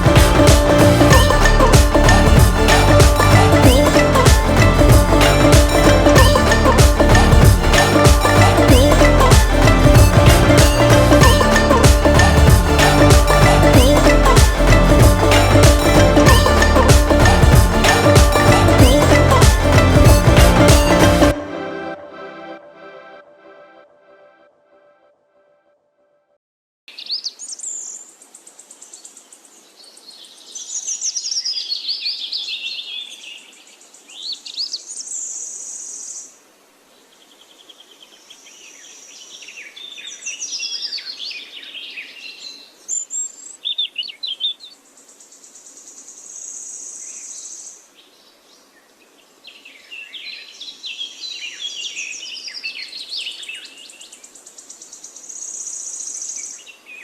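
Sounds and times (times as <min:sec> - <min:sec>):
high-pitched buzz: 0:00.0 - 0:24.5.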